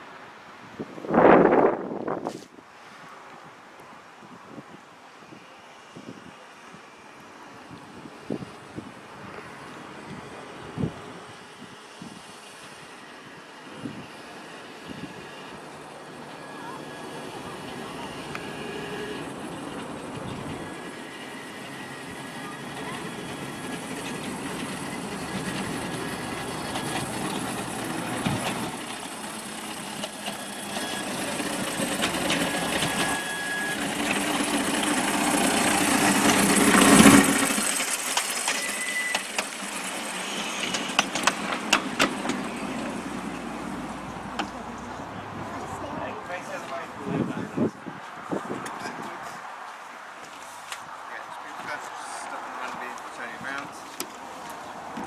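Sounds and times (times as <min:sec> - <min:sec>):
vehicle passing: 0:13.7 - 0:49.7.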